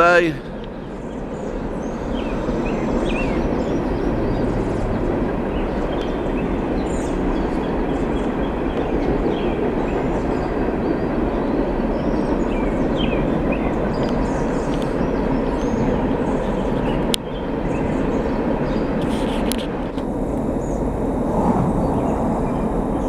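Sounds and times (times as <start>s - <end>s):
train rumbling past: 0.0s - 11.5s, 20.0s - 23.0s.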